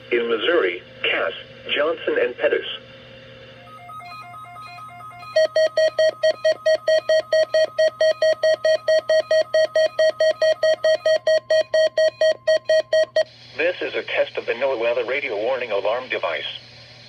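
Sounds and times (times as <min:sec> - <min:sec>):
rapid alarm beeping: 0:03.6 - 0:13.4.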